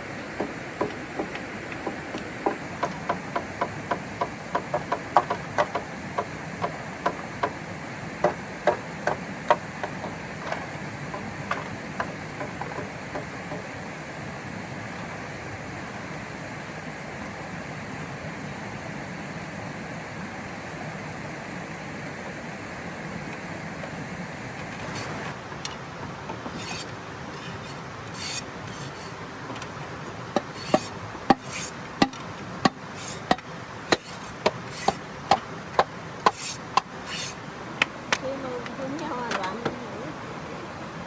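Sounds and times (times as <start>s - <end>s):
blade chopping wood: 26.4s - 29.2s, 30.4s - 37.4s.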